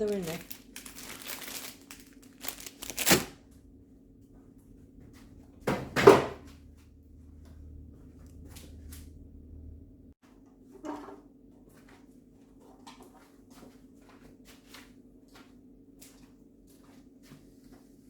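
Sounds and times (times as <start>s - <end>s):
food packaging crinkling: 0.0s - 3.4s.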